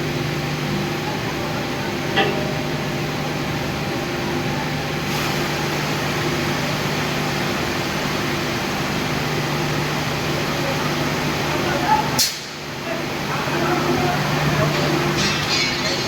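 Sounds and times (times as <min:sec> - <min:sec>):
low electrical hum: 0:00.0 - 0:05.0.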